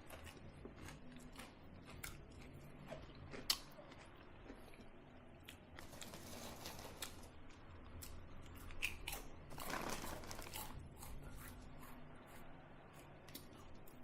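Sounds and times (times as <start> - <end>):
crunchy food chewing: 0.0 - 7.3, 7.9 - 14.0
packaging crinkling: 9.5 - 10.7.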